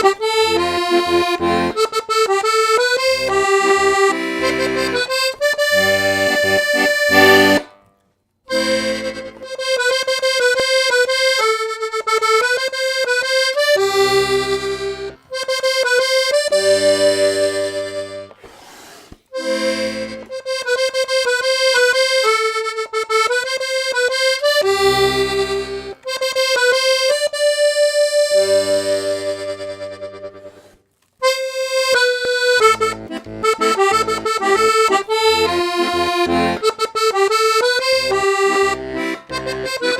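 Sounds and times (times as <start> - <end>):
bass chords: 0.0 - 7.9, 32.4 - 39.9
button accordion playing a tune: 0.0 - 39.9.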